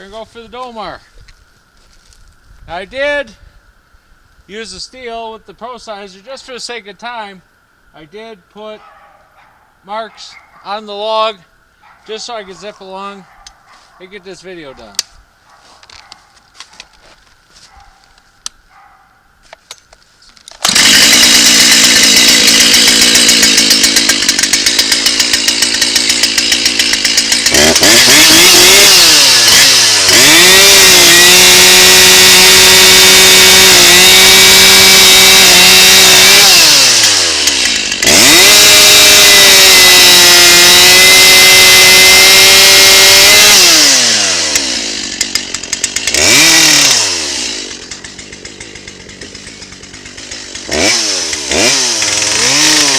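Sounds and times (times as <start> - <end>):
chainsaw cutting wood: 20.5 - 52.9
chainsaw idling and revving: 20.5 - 52.9.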